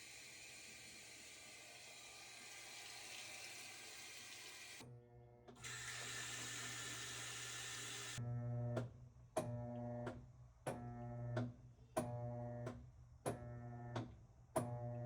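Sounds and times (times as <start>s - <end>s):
washing machine hiss and hum: 0.0s - 4.8s, 5.6s - 8.2s.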